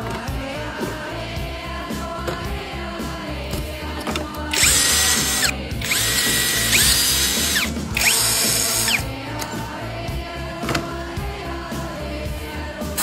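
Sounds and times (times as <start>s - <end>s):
background music: 0.0s - 13.0s
power tool whining: 4.5s - 9.1s.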